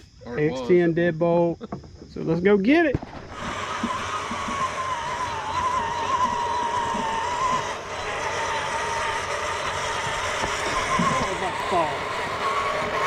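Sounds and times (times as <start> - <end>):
electric motors whining: 3.2 - 13.0.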